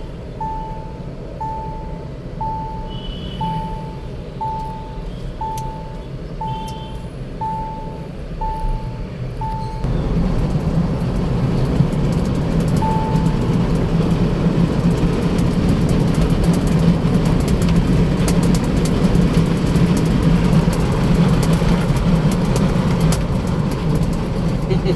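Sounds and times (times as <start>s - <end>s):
road and wind noise drone: 0.0s - 24.9s
dashboard chime beeping: 0.3s - 9.9s, 12.8s - 13.9s.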